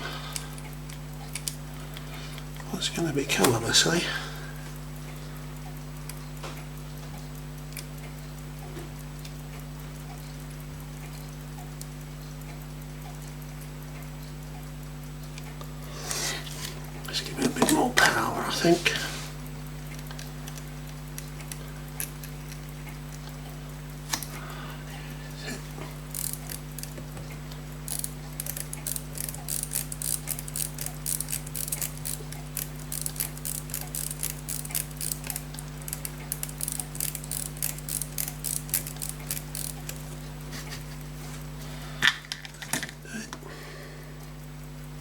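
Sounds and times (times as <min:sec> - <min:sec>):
pocket watch ticking: 0:26.0 - 0:27.0, 0:27.8 - 0:40.2
watch clicks: 0:26.0 - 0:40.9.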